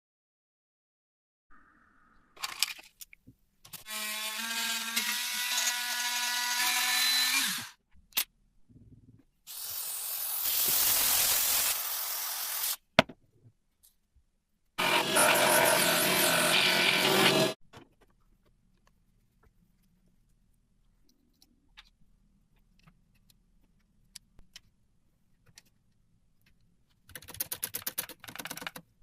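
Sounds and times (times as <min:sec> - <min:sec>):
small power tool whining: 0:03.8 - 0:07.8.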